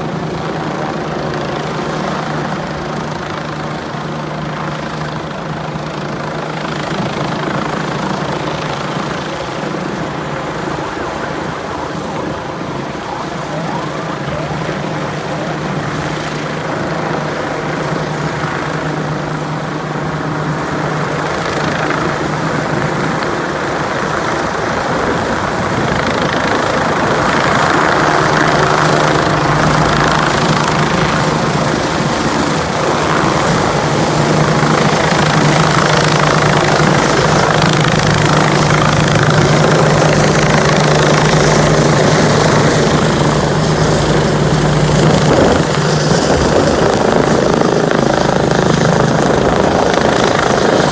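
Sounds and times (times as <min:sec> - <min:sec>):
helicopter rotor and turbine: 0:00.0 - 0:50.9.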